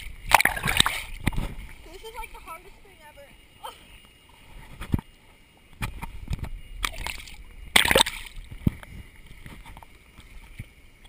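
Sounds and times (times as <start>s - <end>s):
loud splash: 0.0s - 1.3s, 6.8s - 8.4s
water sloshing and splashing: 0.0s - 11.0s.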